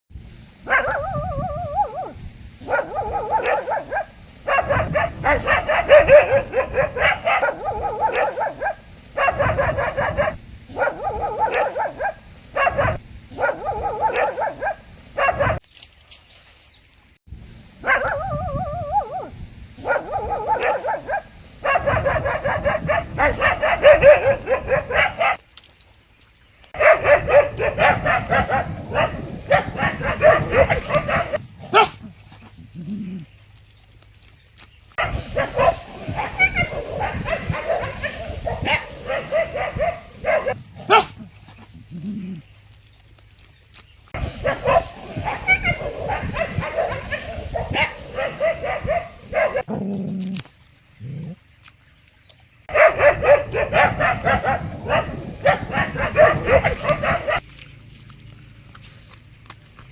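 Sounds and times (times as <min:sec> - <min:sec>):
dog barking: 0:00.7 - 0:15.6, 0:17.8 - 0:25.4, 0:26.8 - 0:32.0, 0:35.0 - 0:41.2, 0:44.2 - 0:49.7, 0:52.7 - 0:57.4.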